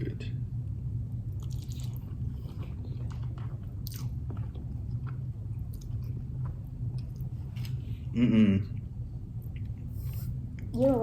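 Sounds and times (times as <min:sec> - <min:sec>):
low hum: 0:00.0 - 0:11.0
person chewing food: 0:01.3 - 0:08.0.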